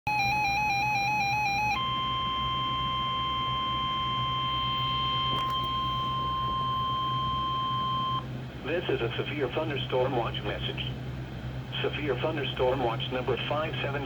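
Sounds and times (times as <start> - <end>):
steady high warning beep: 0.1 - 8.3
low hum: 0.1 - 14.0.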